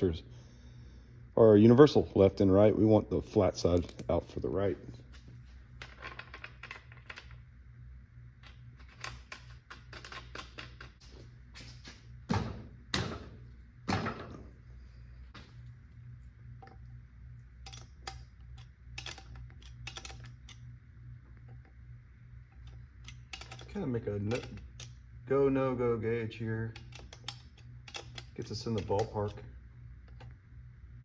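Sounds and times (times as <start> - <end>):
low steady hum: 0.0 - 31.0
metal parts and tools clattering: 19.0 - 20.6, 22.5 - 24.9.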